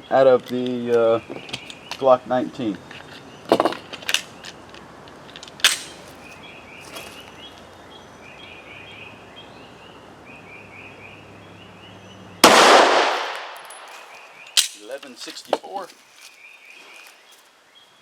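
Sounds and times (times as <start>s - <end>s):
pistol shot with echo: 12.4s - 13.6s.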